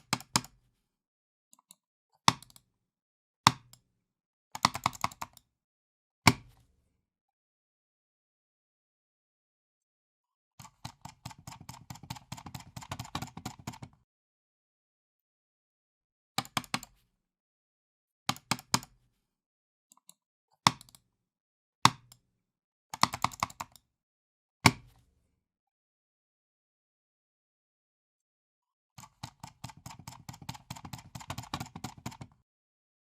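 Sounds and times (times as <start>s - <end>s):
computer mouse clicking: 0.0s - 0.6s, 1.6s - 2.6s, 4.6s - 5.4s, 10.6s - 14.0s, 16.4s - 17.0s, 23.0s - 23.8s, 29.0s - 32.4s.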